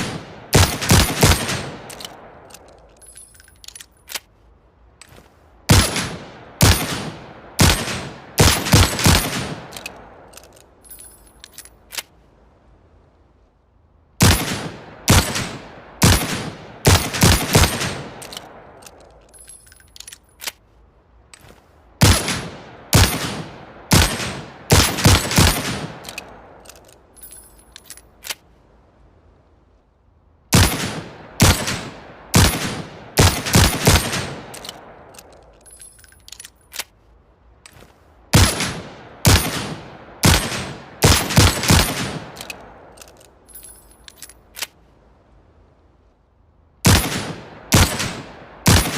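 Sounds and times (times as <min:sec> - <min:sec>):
light metallic clicks: 0:01.8 - 0:04.4, 0:17.6 - 0:20.7, 0:33.4 - 0:37.0, 0:41.3 - 0:44.8.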